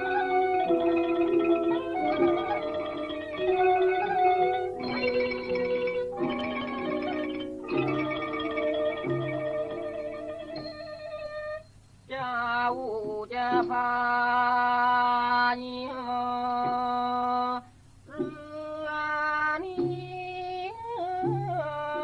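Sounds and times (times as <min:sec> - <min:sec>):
man singing long bending notes: 0:12.1 - 0:22.0.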